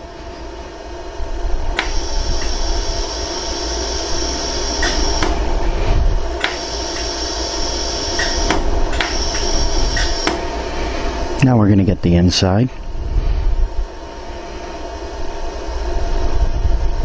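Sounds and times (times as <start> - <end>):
high whine: 0.0 - 17.0
steady machine hum: 0.0 - 17.0
welding machine sharp clicks: 1.8 - 5.5, 6.4 - 10.5.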